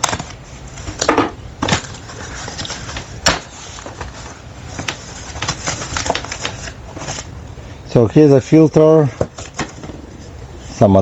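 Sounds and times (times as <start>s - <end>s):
cardboard rustling and crinkling: 0.0s - 7.4s, 9.1s - 10.2s.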